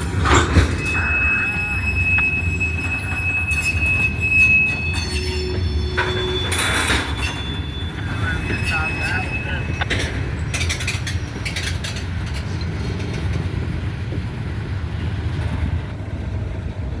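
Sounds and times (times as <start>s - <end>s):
wheels clicking over rail joints: 0.0s - 8.4s, 9.7s - 17.0s
train wheel squeal: 0.0s - 13.4s
freight train cars rolling: 0.0s - 17.0s.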